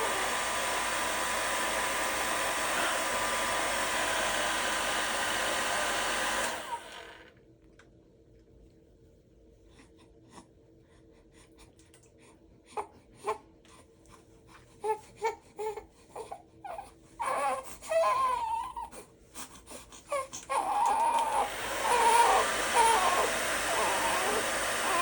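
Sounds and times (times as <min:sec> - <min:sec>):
baby crying: 0:16.7 - 0:18.9, 0:20.1 - 0:25.0.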